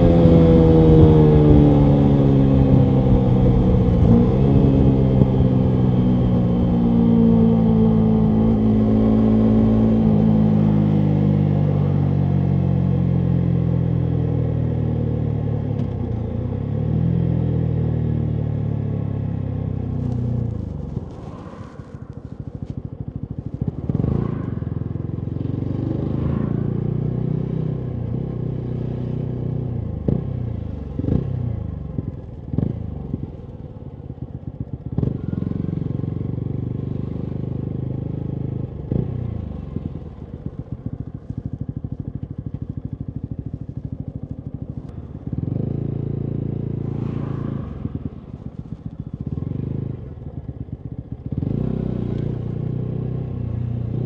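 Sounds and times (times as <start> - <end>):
motorcycle engine braking: 19.8 - 25.2
exhaust pops and crackles: 19.9 - 23.9.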